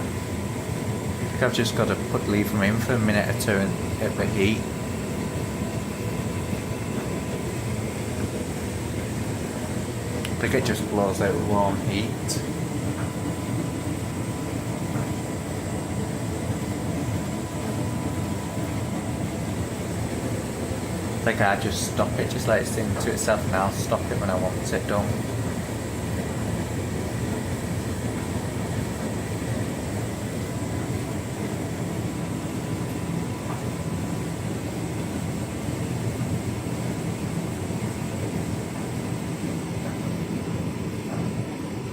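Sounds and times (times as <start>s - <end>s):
tumble dryer rumbling: 0.0s - 41.9s.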